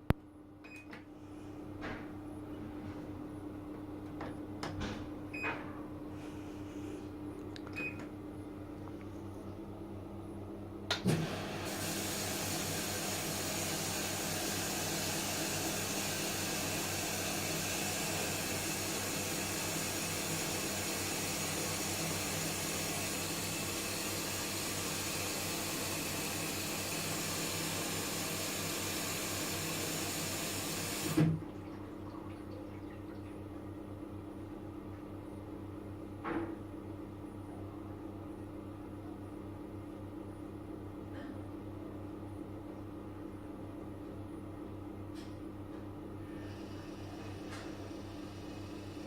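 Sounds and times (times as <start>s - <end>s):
water rushing into washing machine: 11.0s - 33.5s.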